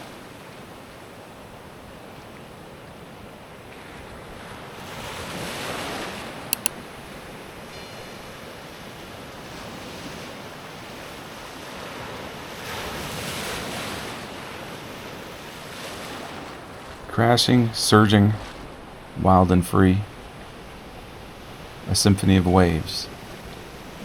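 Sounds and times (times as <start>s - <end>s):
sharp double click: 6.6s - 6.8s.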